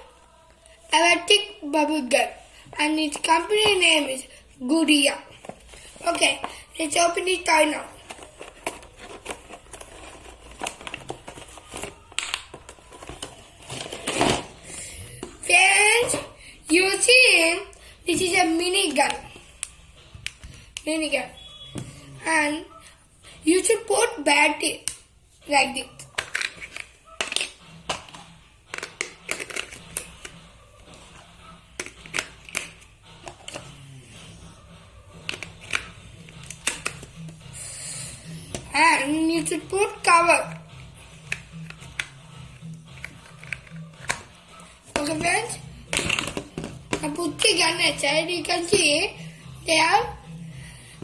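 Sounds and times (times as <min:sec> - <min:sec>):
loud packaging rustle: 0:08.0 - 0:14.6.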